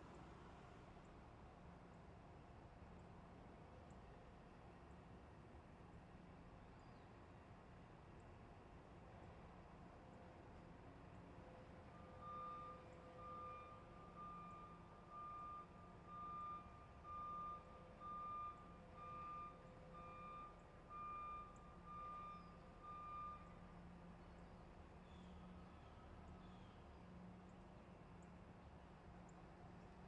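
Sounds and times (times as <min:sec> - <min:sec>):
vehicle reversing alarm beeping: 0:11.9 - 0:23.8.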